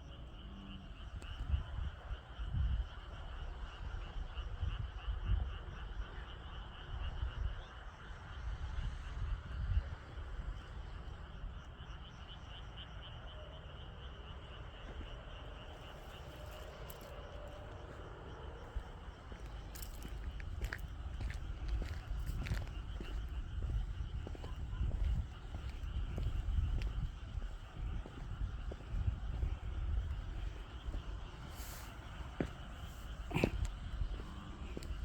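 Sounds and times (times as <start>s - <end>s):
low rumble: 19.3s - 35.0s.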